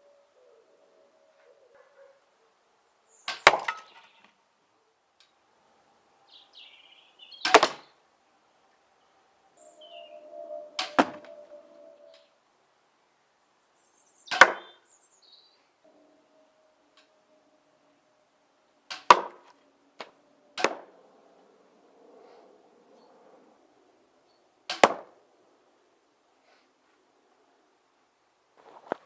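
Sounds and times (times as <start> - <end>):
bolts striking targets: 3.3 - 4.0, 7.4 - 7.9, 18.8 - 21.0, 24.7 - 25.2
crossbow shot: 7.4 - 7.9, 10.8 - 11.3, 18.9 - 19.4, 20.6 - 20.9, 24.7 - 25.2.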